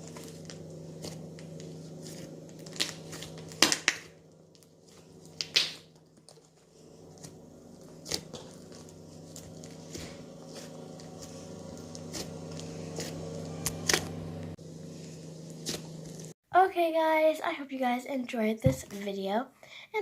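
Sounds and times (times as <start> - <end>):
slime crackling and popping: 0.4 - 6.5, 8.0 - 9.8.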